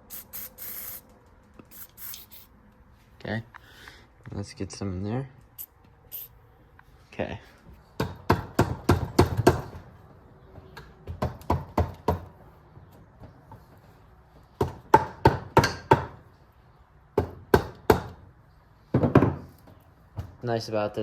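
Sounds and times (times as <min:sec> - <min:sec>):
sharp knocks on engine cylinder: 0:08.0 - 0:09.8, 0:14.6 - 0:16.2, 0:17.2 - 0:18.2.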